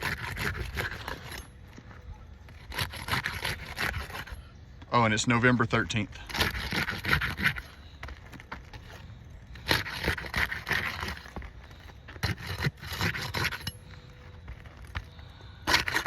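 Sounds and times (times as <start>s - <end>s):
scraping on roof shingles: 6.2s - 16.0s.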